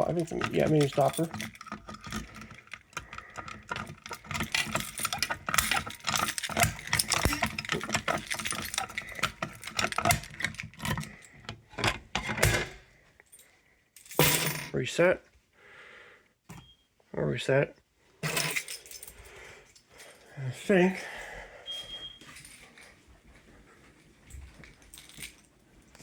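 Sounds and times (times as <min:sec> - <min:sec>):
keys jangling: 0:00.0 - 0:11.5, 0:18.2 - 0:20.3, 0:24.3 - 0:26.0
small parts clicking and rattling: 0:00.0 - 0:13.4, 0:18.2 - 0:20.2, 0:24.4 - 0:26.0.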